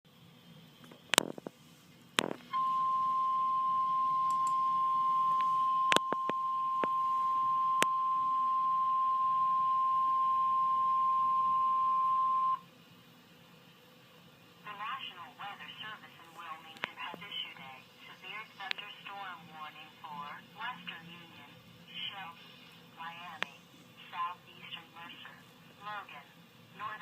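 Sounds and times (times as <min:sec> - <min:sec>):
high steady alert beep: 0:02.6 - 0:12.6.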